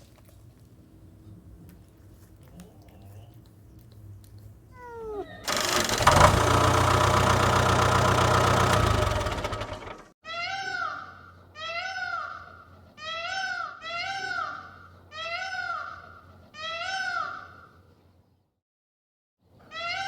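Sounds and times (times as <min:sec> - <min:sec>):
cat meowing: 0:04.7 - 0:05.5.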